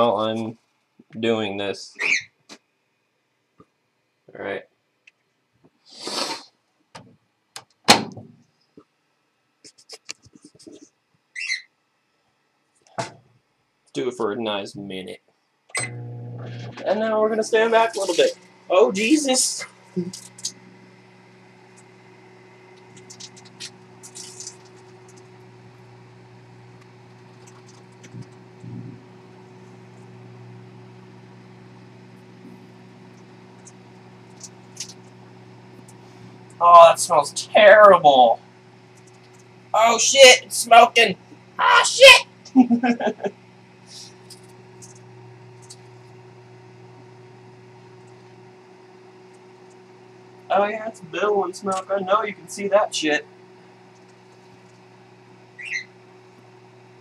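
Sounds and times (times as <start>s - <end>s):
microwave door shutting: 7.9s - 8.2s
microwave oven humming: 15.7s - 57.0s
phone crackling and popping: 19.6s - 36.6s, 38.8s - 39.7s.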